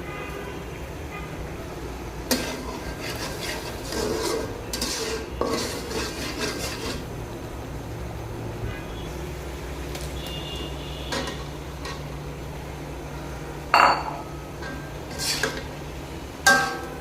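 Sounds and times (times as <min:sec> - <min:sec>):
spoon scraping in a pan: 0:02.2 - 0:07.1, 0:11.1 - 0:12.2, 0:14.6 - 0:15.8, 0:16.5 - 0:17.0.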